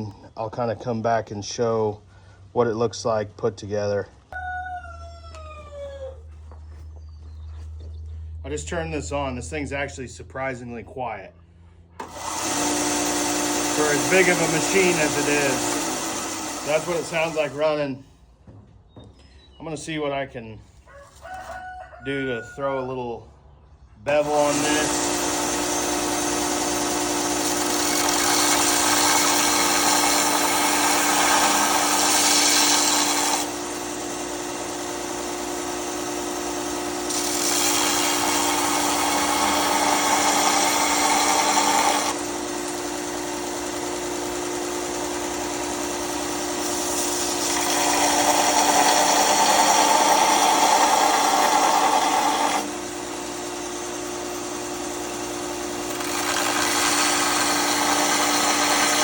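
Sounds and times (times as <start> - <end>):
blade grinding rasp: 12.0 - 17.8, 24.1 - 59.0
sander motor hum: 12.0 - 17.8, 24.1 - 59.0.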